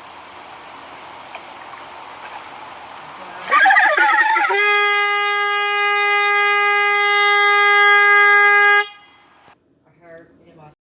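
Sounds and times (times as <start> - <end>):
air horn blast: 3.4 - 9.4.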